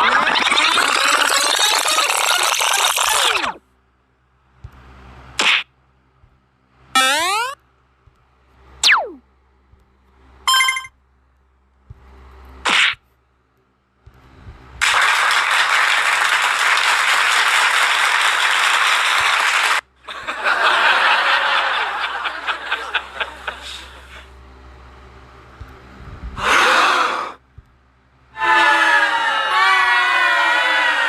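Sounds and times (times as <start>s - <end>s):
short ringing tone: 10.5s - 10.9s.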